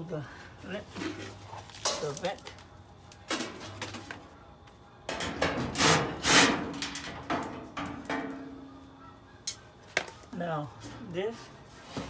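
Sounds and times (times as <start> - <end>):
sheet metal scrapes and knocks: 5.1 - 8.7.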